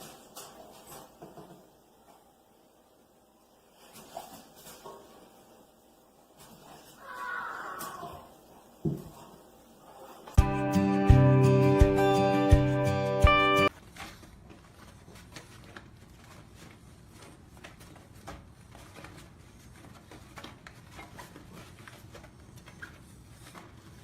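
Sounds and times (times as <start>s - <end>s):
background music: 10.4s - 13.7s.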